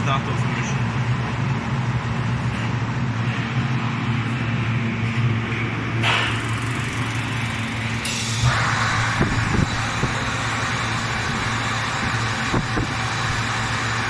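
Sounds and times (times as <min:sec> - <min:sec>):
heater fan humming: 0:00.0 - 0:14.0
gas burner igniting hiss: 0:08.0 - 0:14.0.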